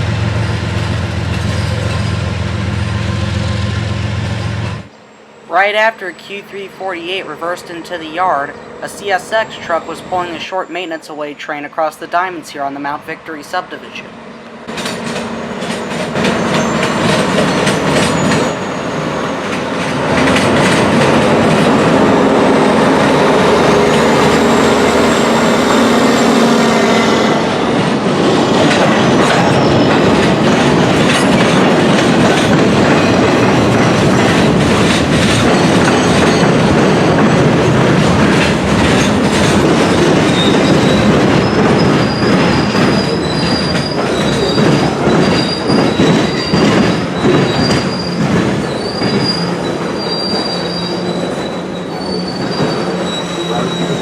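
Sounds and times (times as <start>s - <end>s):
train wheels clacking over crossing: 14.6s - 54.0s
high wheel squeals: 15.2s - 20.0s, 22.6s - 27.4s, 29.0s - 30.5s, 35.4s - 37.1s, 39.0s - 54.0s.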